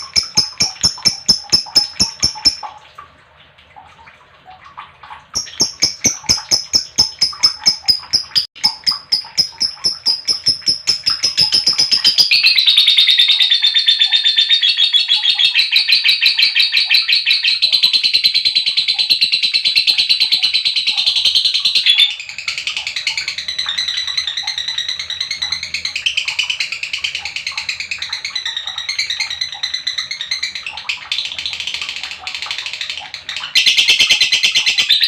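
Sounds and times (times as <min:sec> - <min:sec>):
lovebird chirping: 0:05.4 - 0:12.8.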